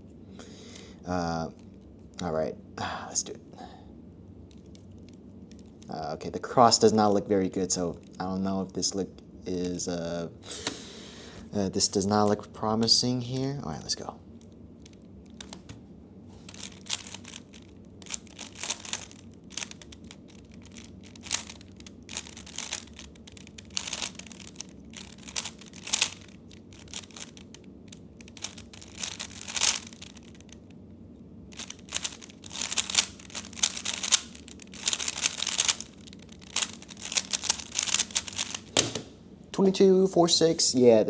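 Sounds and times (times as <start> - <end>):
puzzle cube clicking: 15.3 - 15.8, 16.5 - 30.6, 31.5 - 39.1.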